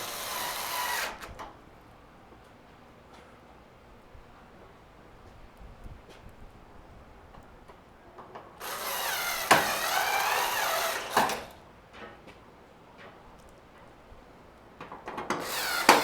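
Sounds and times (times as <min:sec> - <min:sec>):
cordless driver motor whine: 0:00.0 - 0:01.4, 0:08.6 - 0:11.6, 0:15.4 - 0:16.0.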